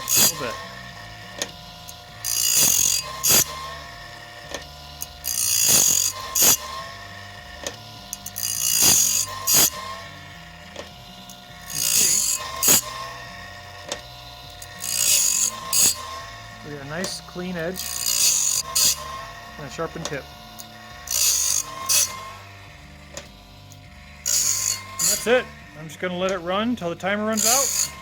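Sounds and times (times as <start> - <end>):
grinding wheel hissing on metal: 0.0 - 28.0.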